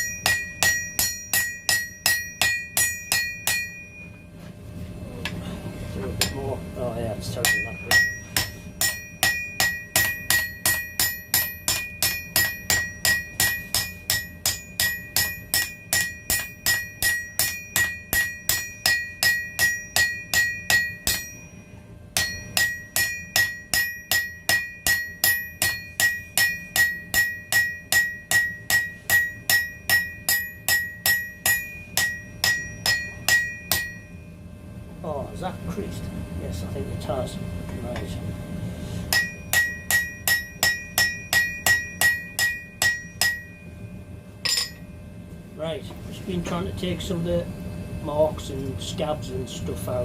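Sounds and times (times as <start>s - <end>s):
hammer striking steel on anvil: 0.0s - 4.2s, 6.2s - 6.5s, 7.2s - 34.3s, 39.1s - 45.0s.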